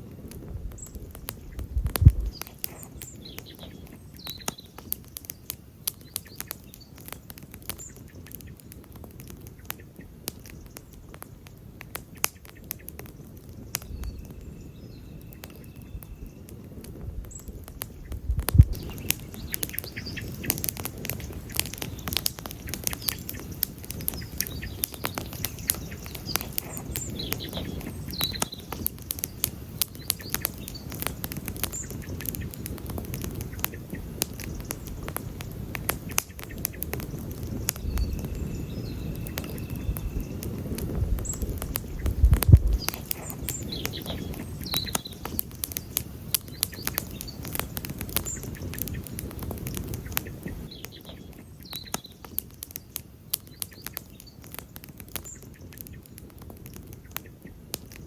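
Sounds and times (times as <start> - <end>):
campfire crackling and popping: 0.0 - 58.0.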